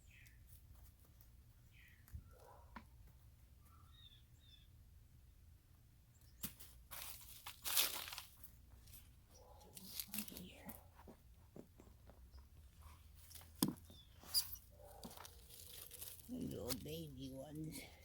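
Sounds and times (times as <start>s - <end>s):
hands rustling through soil: 6.3s - 18.0s.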